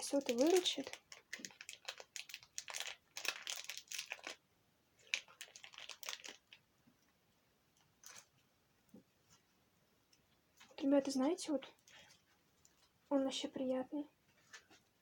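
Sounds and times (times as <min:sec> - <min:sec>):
crunchy slime crackling: 0:00.0 - 0:04.4, 0:05.0 - 0:06.6.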